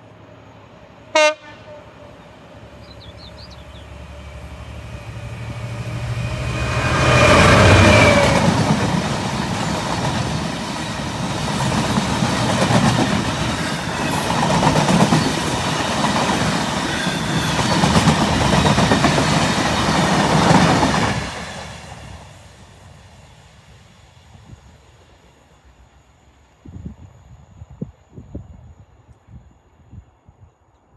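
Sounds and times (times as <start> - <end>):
train passing: 0.0 - 29.9
wheels clacking over rail joints: 6.5 - 21.5.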